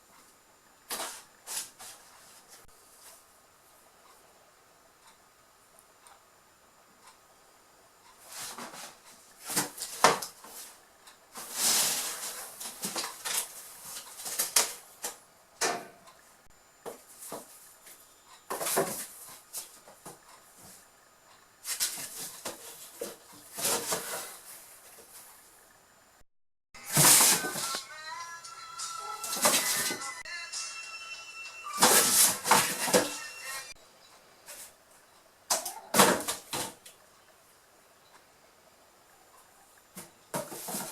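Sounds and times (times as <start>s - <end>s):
kittens scratching cardboard box: 26.9s - 27.7s, 31.8s - 33.1s.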